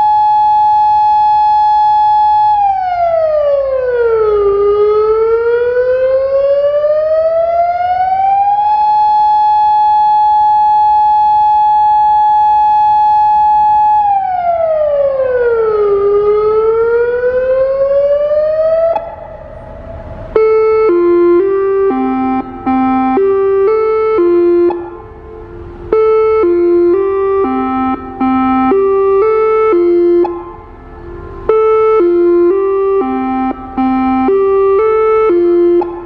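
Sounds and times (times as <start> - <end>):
electronic siren wailing: 0.0 - 36.0
synthesizer music: 19.0 - 36.0.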